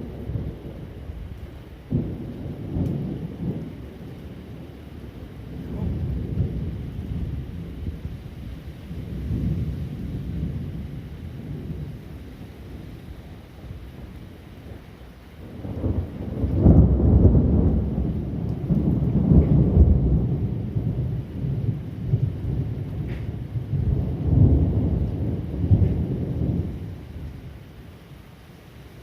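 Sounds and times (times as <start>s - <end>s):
thunder rolling rumble: 0.0s - 28.2s.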